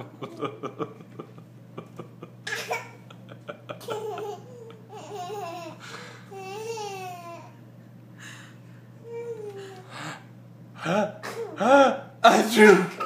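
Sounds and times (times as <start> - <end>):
child laughing and babbling: 3.8 - 7.6, 9.0 - 9.9, 11.3 - 12.0.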